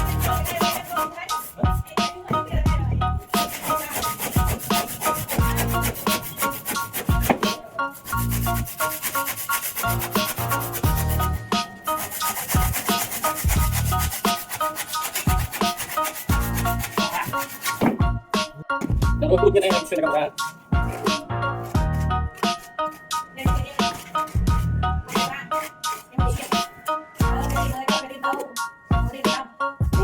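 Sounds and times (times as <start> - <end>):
rapid rubbing strokes: 0.0 - 1.7, 3.2 - 17.8
background music with bass: 0.0 - 3.6, 4.2 - 14.4, 15.2 - 29.2, 29.8 - 30.0.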